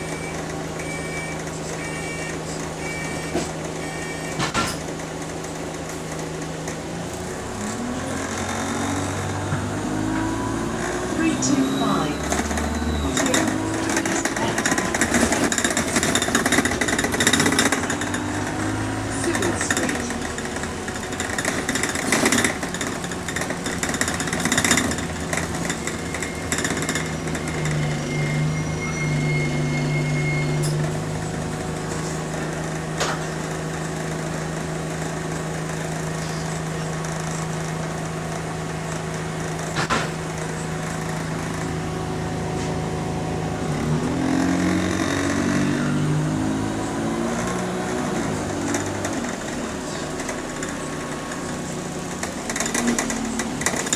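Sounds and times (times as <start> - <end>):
bus engine drone: 0.0 - 53.9
bodywork rattling and clattering: 12.2 - 28.2
high whistle: 27.7 - 30.8.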